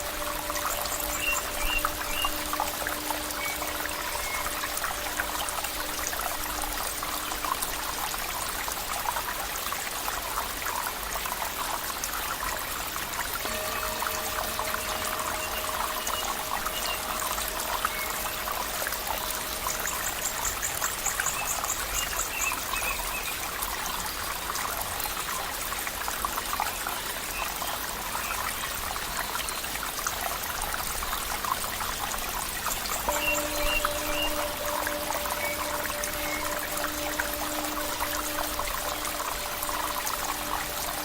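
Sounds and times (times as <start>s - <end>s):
faint high chirps: 0.0s - 7.6s, 13.5s - 23.0s, 33.0s - 41.0s
soft musical tones: 0.0s - 9.3s, 12.9s - 22.8s, 33.0s - 41.0s
water trickling and splashing: 0.0s - 41.0s.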